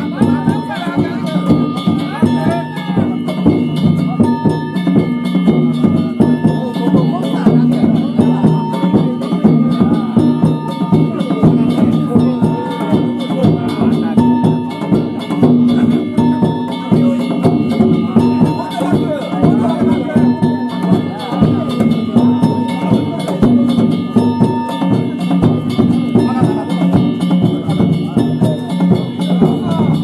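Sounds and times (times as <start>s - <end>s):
crowd voices: 0.0s - 30.0s
drum beating: 0.0s - 30.0s
metal gongs ringing: 0.0s - 30.0s.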